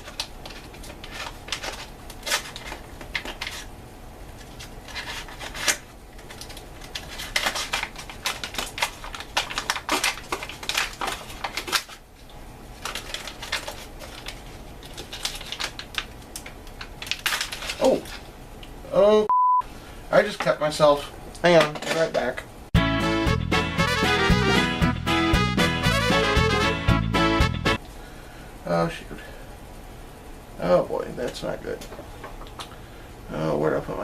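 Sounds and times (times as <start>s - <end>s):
plastic pouch crinkling: 4.6s - 12.0s, 12.8s - 18.2s.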